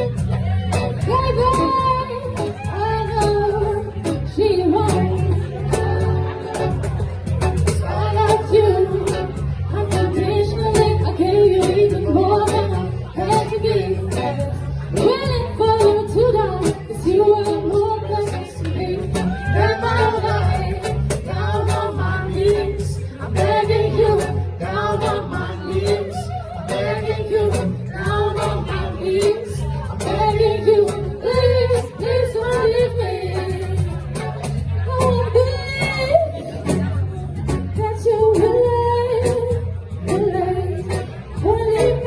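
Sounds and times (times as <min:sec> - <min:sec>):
live band playing: 0:00.0 - 0:42.0
person singing: 0:07.8 - 0:34.0.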